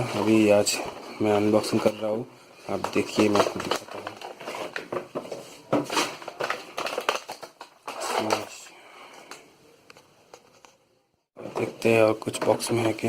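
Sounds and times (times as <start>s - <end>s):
packaging being handled and opened: 0.0s - 8.7s.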